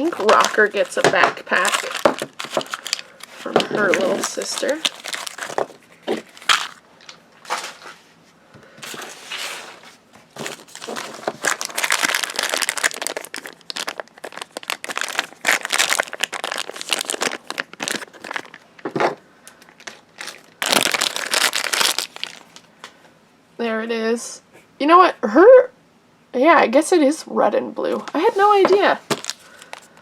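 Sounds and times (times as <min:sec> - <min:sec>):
plastic wrapping crinkling: 0:00.0 - 0:07.9, 0:08.8 - 0:18.9, 0:19.5 - 0:22.7, 0:28.0 - 0:30.0.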